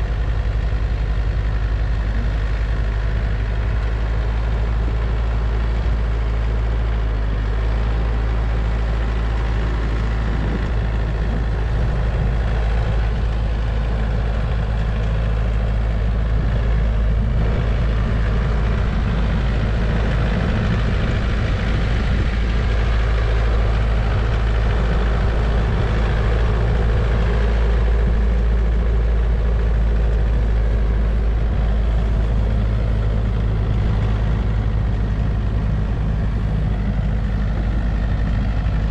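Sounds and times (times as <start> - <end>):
tractor diesel engine running: 0.0 - 38.9.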